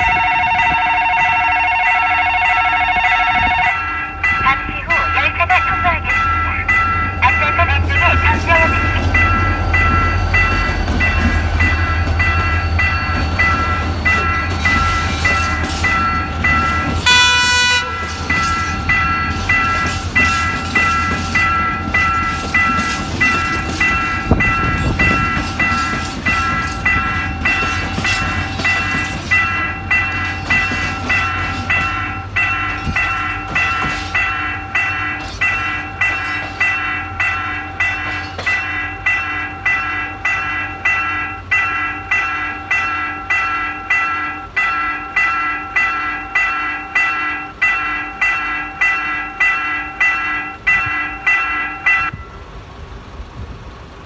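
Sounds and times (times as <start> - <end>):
railroad crossing bell ringing: 0.0 - 54.0
train rumbling past: 0.0 - 54.0
train horn blast: 16.9 - 18.5.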